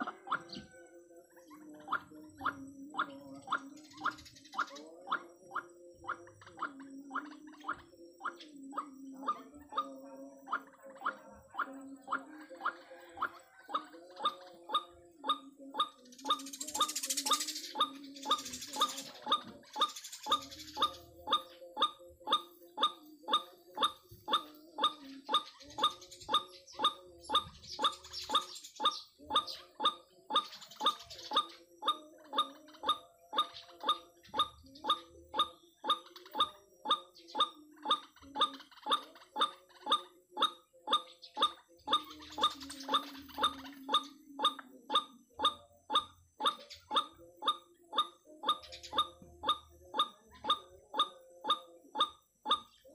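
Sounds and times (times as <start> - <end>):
waterhen calling: 0.0 - 0.6.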